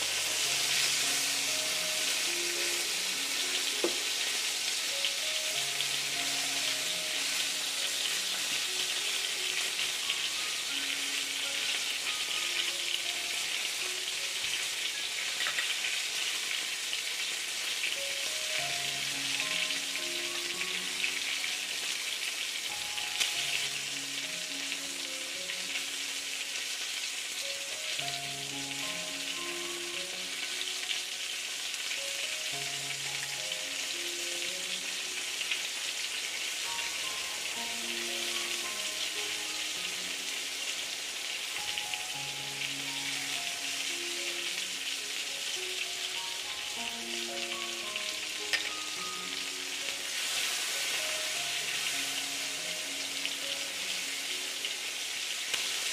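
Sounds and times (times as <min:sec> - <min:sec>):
chicken sizzling in oil: 0:00.0 - 0:55.9
soft background music: 0:00.0 - 0:55.9.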